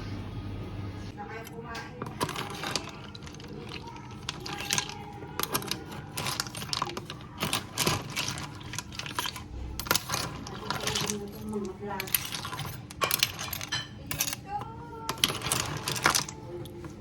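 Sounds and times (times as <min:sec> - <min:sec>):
small hard objects clattering: 0:01.3 - 0:17.0.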